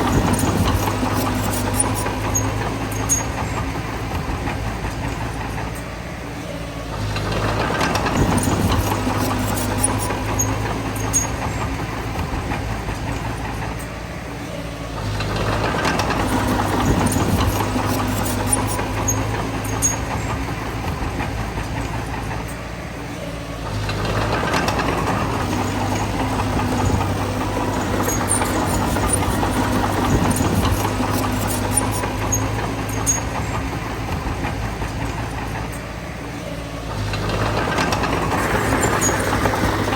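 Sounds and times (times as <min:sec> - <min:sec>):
bulldozer diesel engine: 0:00.0 - 0:39.9
tracks clicking and clinking: 0:00.0 - 0:39.9.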